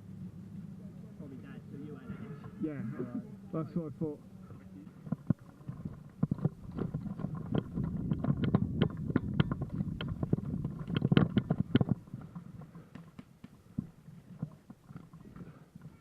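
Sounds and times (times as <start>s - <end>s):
low rumble on microphone: 4.4s - 16.0s.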